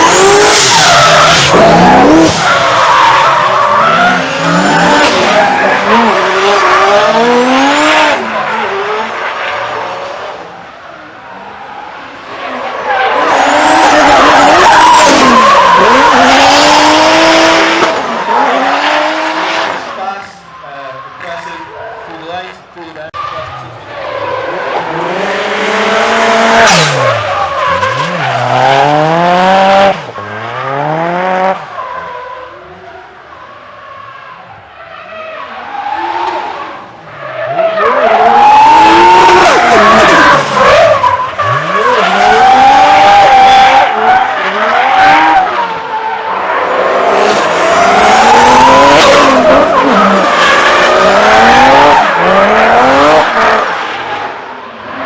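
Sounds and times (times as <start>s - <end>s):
car engine revving: 0.0s - 10.0s, 11.4s - 20.1s, 21.3s - 31.8s, 36.0s - 55.0s
tyres squealing: 37.2s - 53.3s.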